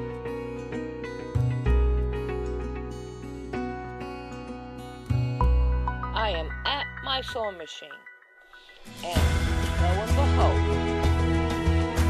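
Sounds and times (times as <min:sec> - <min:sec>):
plucked acoustic guitar: 0:00.0 - 0:07.3.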